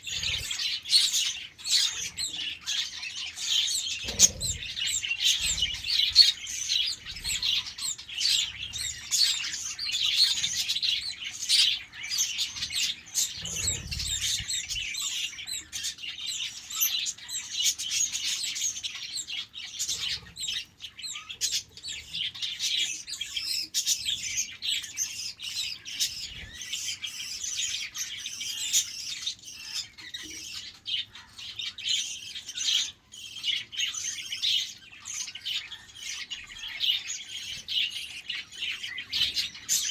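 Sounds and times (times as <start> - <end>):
budgerigars chirping: 0.0 - 39.9.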